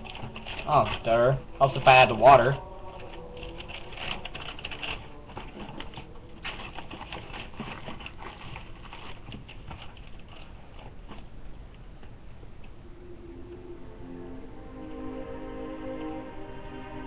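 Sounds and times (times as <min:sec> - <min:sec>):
water crackling in ration heater: 0:00.0 - 0:12.8.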